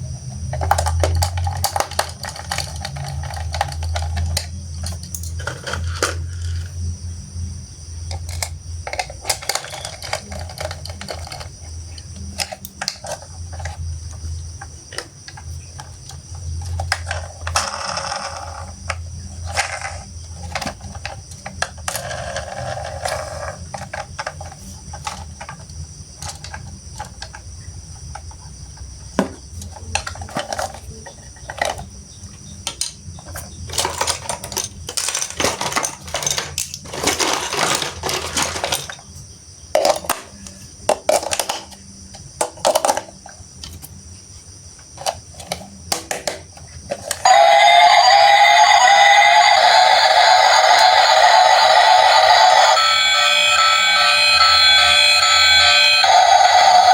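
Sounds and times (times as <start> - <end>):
plastic toy parts clicking: 0.5 - 6.7, 8.1 - 13.8, 14.9 - 27.4, 39.8 - 43.8.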